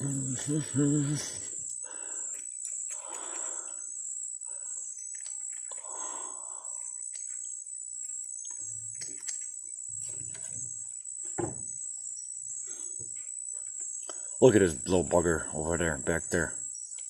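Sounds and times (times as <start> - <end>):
insect chorus drone: 0.0 - 17.0
small clicks: 5.0 - 6.0, 6.8 - 9.6.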